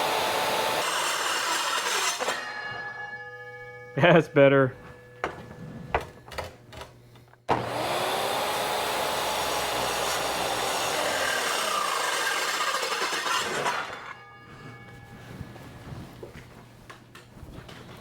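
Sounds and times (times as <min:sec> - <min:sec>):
circular saw cutting steel: 0:00.0 - 0:04.3, 0:07.6 - 0:14.9.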